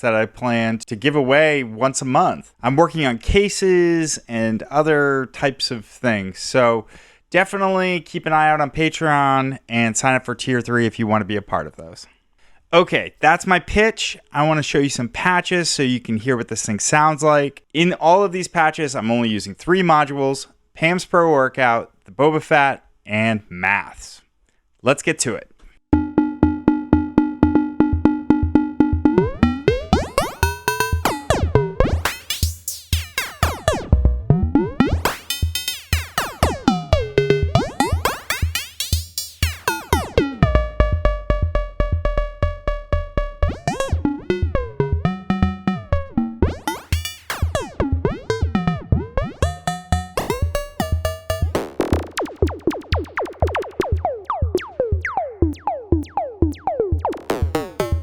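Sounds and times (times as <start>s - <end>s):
fast electronic pulse with thump: 25.9s - 58.0s.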